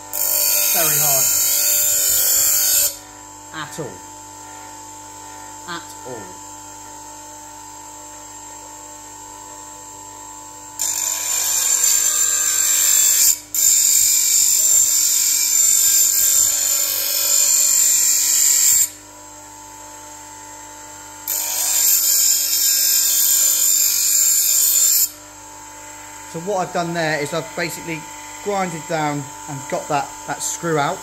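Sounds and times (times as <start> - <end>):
bench grinder humming: 0.0 - 31.0
blade grinding on wheel: 0.1 - 3.0, 21.3 - 25.1.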